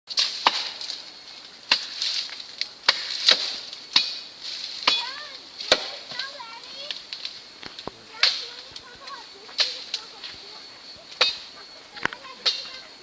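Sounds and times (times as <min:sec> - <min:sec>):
blades chopping wood: 0:00.1 - 0:01.0, 0:01.7 - 0:04.2, 0:04.8 - 0:06.3, 0:07.6 - 0:08.6.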